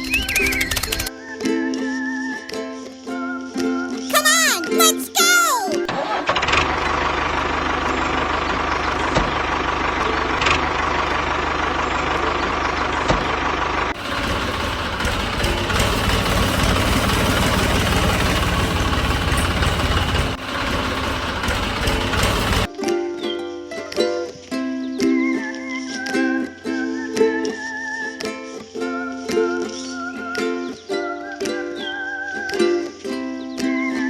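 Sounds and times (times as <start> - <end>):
tractor engine idling: 6.2 - 22.7.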